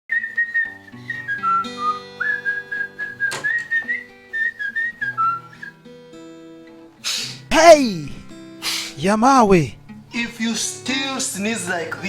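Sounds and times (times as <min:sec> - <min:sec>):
whistled melody: 0:00.1 - 0:05.9
plucked acoustic guitar: 0:05.2 - 0:11.1.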